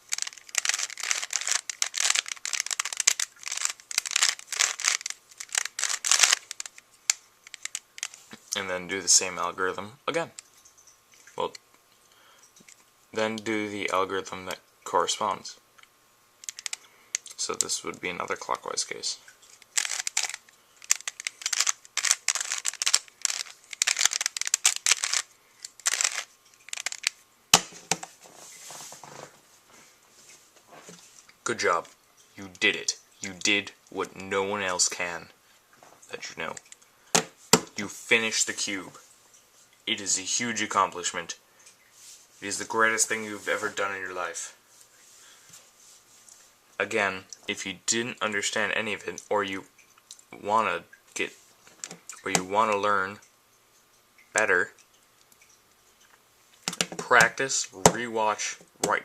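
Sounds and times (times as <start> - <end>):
plastic puzzle cube clicking: 0.0 - 8.2, 16.4 - 17.3, 19.5 - 28.1.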